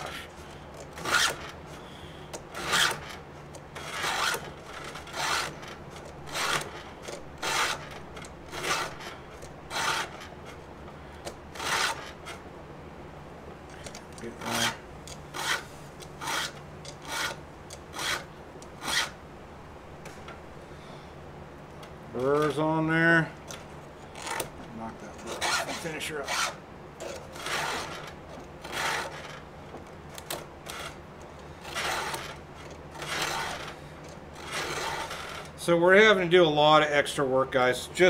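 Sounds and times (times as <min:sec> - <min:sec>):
file rasping on chainsaw chain: 0:00.0 - 0:01.6, 0:02.5 - 0:10.4, 0:11.5 - 0:12.4, 0:13.8 - 0:19.2, 0:25.1 - 0:29.4, 0:31.6 - 0:33.8, 0:34.4 - 0:35.6.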